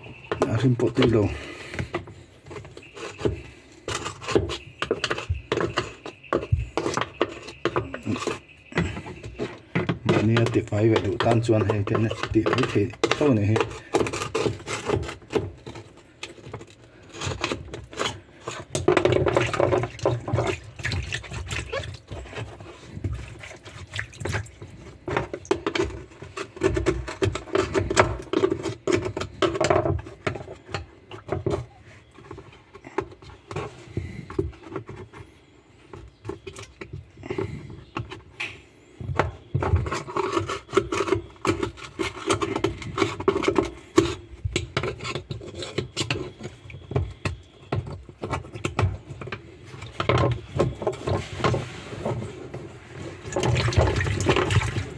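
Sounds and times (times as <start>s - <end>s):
scraping: 0.0s - 54.9s
water splashing: 53.3s - 54.9s.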